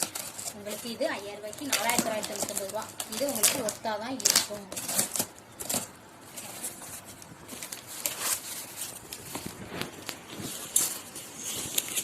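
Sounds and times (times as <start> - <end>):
cardboard box rustling: 4.7 - 12.0.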